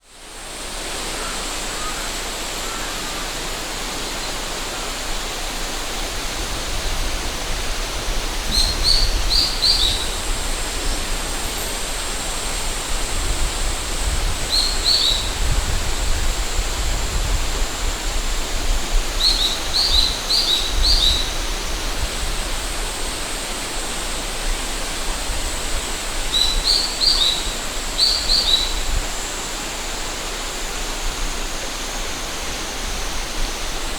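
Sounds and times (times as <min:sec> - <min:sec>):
cicada drone: 0:00.0 - 0:33.9
river water rushing: 0:00.0 - 0:33.9
wind rumbling on microphone: 0:04.8 - 0:29.4
bird chirping: 0:08.5 - 0:10.1, 0:26.3 - 0:28.8.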